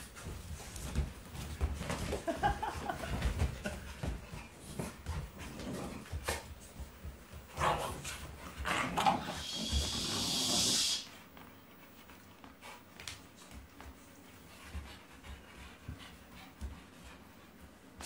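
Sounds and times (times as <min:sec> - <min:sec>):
dogs growling: 0:07.5 - 0:10.8
steady hiss: 0:09.2 - 0:12.1.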